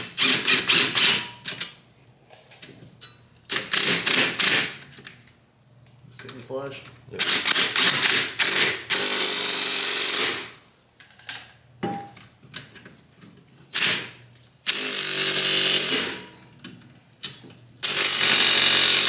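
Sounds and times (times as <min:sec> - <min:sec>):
impact wrench bursts: 0:00.0 - 0:01.3, 0:03.5 - 0:04.8, 0:07.2 - 0:10.6, 0:13.7 - 0:16.2, 0:17.8 - 0:19.0.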